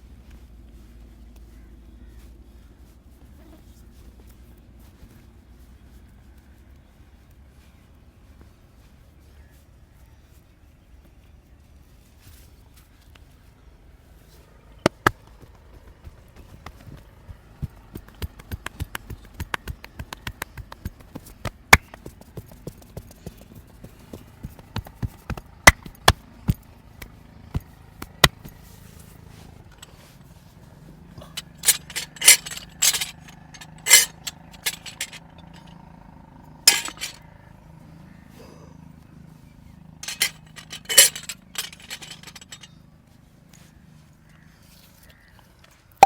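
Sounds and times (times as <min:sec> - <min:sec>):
hands slapping: 0:14.9 - 0:22.1
hands clicking and snapping: 0:17.6 - 0:22.1, 0:28.0 - 0:28.6.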